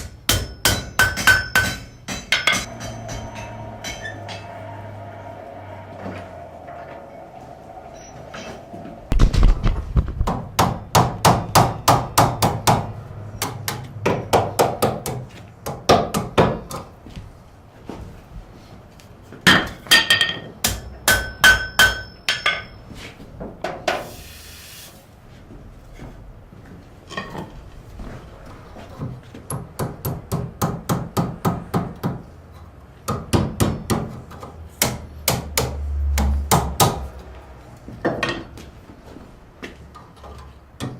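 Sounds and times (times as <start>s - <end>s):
hammer striking metal on anvil: 0.0s - 5.9s, 19.5s - 22.8s.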